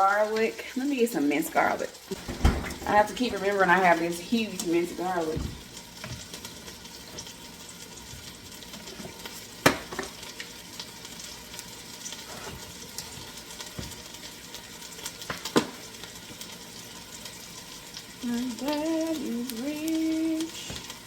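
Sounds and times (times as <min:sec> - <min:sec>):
ground beef sizzling: 0:00.0 - 0:21.0.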